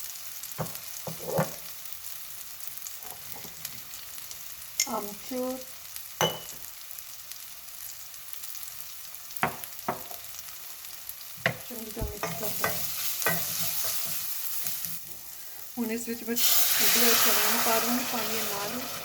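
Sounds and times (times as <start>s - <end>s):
masala sizzling in oil: 0.0s - 19.0s
spoon scraping a pan: 0.6s - 1.7s, 11.5s - 15.3s.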